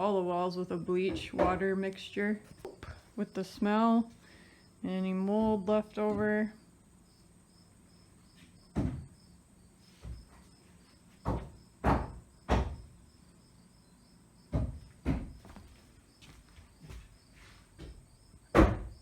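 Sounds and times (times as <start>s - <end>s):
dull knocks: 11.2s - 12.9s, 14.5s - 15.6s, 17.8s - 19.0s.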